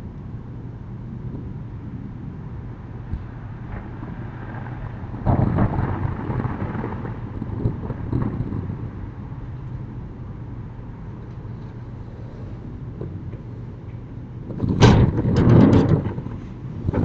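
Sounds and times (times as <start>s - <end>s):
steady low hum: 0.0s - 17.0s
sliding shutters rattling along track: 14.5s - 17.0s.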